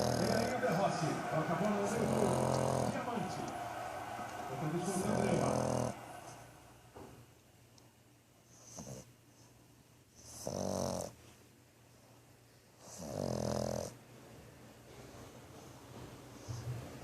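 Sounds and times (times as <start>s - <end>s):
dog snoring: 0.0s - 0.5s, 2.0s - 3.0s, 5.1s - 6.0s, 8.5s - 9.1s, 10.2s - 11.2s, 12.8s - 14.0s.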